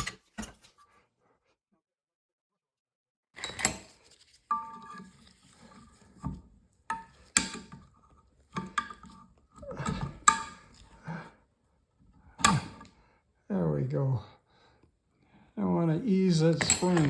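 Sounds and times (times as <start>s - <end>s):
metal parts knocking and clinking: 16.4s - 17.0s.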